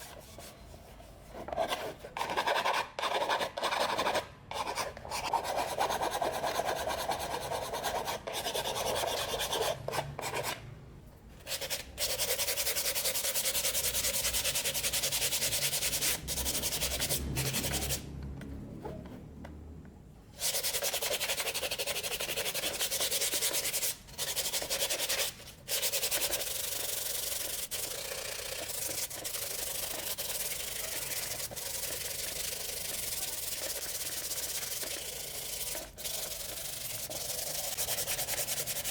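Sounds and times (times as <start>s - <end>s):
sandpaper rubbing hard surface: 20.4s - 38.9s.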